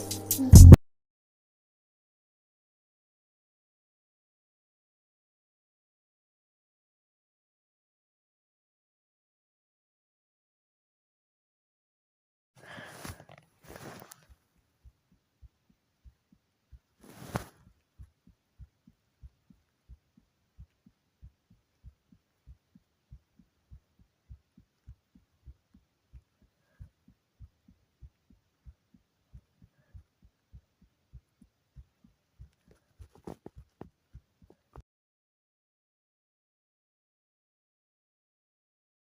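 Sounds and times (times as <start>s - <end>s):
muffled low thumps: 14.8s - 34.5s.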